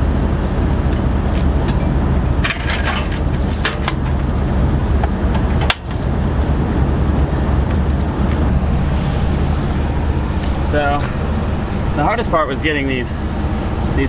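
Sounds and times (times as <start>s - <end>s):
low rumble: 0.0s - 14.0s
metal tools clinking: 2.4s - 4.5s, 5.9s - 6.5s, 7.7s - 8.2s.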